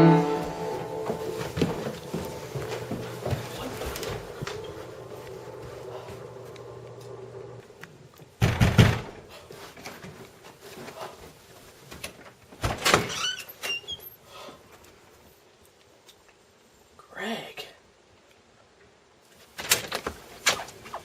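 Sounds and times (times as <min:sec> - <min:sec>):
door banging: 0:08.4 - 0:09.3
short high squeaks: 0:13.1 - 0:14.2.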